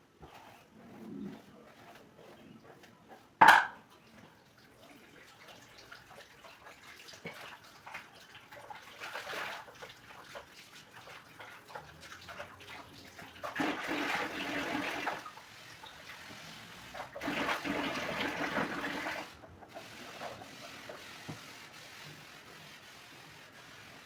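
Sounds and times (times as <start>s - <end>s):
water running and splashing: 3.8s - 24.0s.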